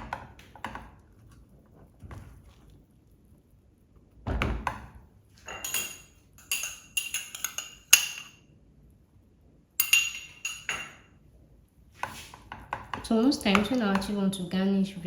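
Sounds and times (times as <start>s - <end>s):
spoon clinking against pot: 5.5s - 8.4s, 9.8s - 11.0s
spoon knocking on pot: 12.1s - 14.2s.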